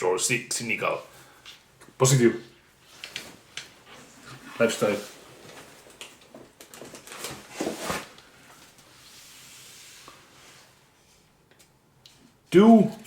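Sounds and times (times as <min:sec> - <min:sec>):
soft steady hiss: 0:00.0 - 0:13.0
packaging rustling: 0:05.4 - 0:08.2.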